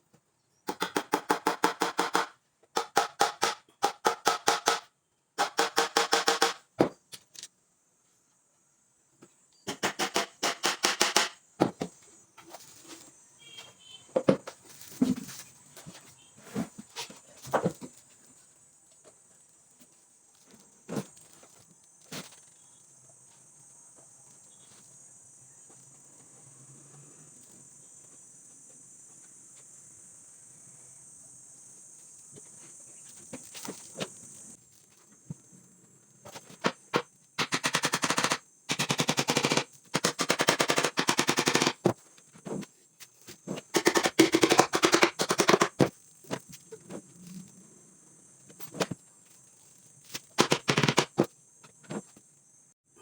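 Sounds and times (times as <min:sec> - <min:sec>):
power tool rattling: 0:43.7 - 0:45.9.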